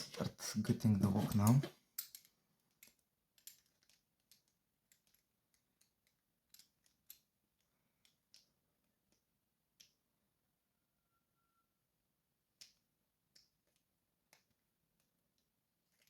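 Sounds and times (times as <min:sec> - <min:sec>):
small metal clicks and taps: 0:01.2 - 0:10.0.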